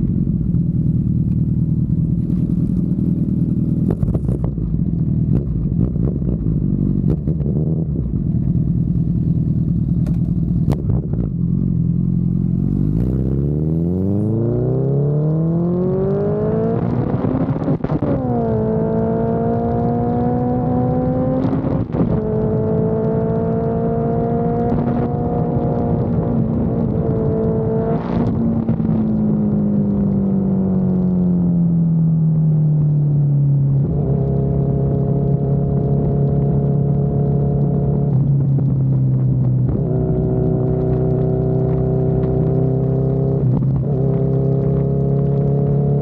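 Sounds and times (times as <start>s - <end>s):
motorcycle engine revving: 0.0s - 31.8s, 33.5s - 46.0s.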